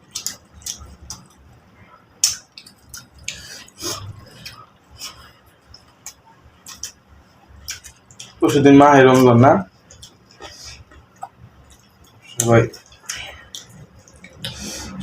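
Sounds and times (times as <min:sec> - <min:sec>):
people chewing: 0:00.0 - 0:08.5, 0:09.1 - 0:15.0
sharp clicks and smacks: 0:00.1 - 0:01.4, 0:02.2 - 0:03.4.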